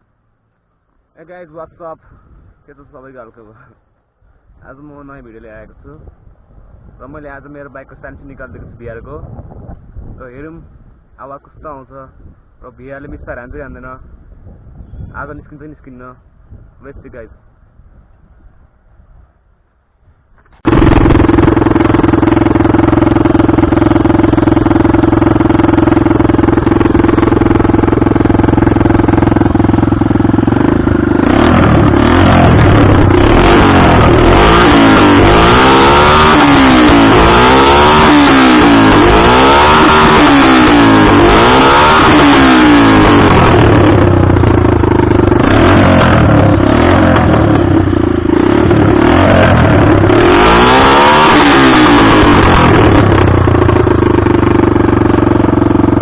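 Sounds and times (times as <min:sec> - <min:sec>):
motorcycle engine revving: 0:20.5 - 0:56.0.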